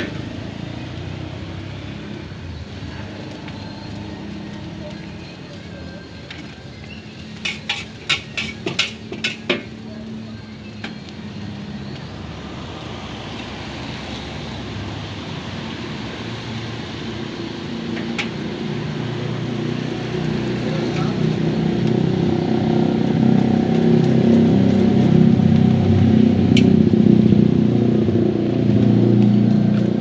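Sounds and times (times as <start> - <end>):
steady noisy background: 2.1 - 30.0
metal spatula clanging on wok: 7.4 - 9.6.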